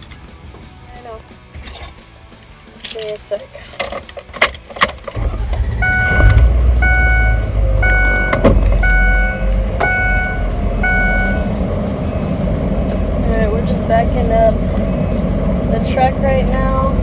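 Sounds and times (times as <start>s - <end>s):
truck engine rumbling: 4.0s - 17.0s
back-up alarm beeping: 5.6s - 11.6s, 14.8s - 16.0s.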